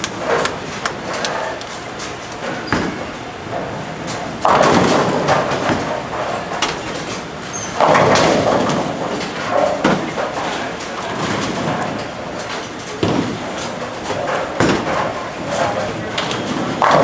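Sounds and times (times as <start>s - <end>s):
bowling lanes rumbling: 0.0s - 17.0s
bowling pins crashing: 1.8s - 10.4s.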